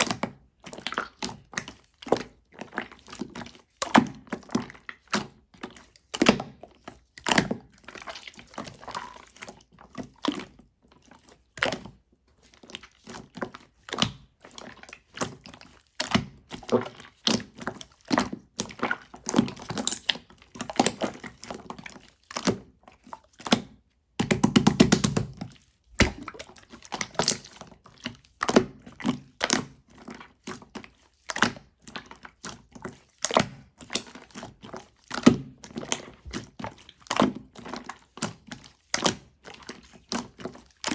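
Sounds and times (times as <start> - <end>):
slime squishing and popping: 7.2 - 9.5, 16.0 - 21.8, 23.4 - 27.7.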